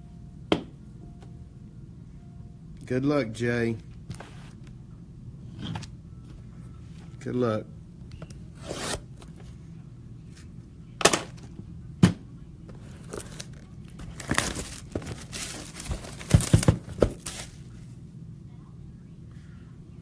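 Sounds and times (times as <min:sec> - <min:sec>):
plastic wrapping crinkling and tearing: 0:12.8 - 0:17.6.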